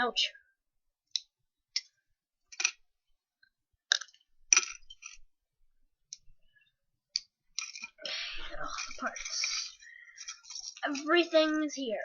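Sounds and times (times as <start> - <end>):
plastic bricks clicking: 1.1 - 2.8, 3.4 - 5.2, 7.1 - 11.1.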